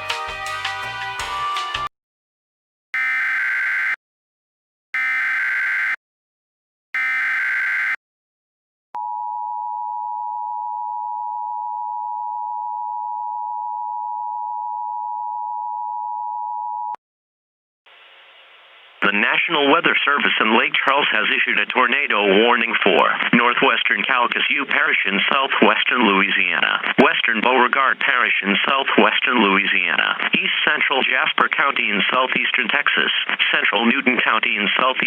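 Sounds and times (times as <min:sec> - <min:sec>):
music: 0:00.0 - 0:01.9.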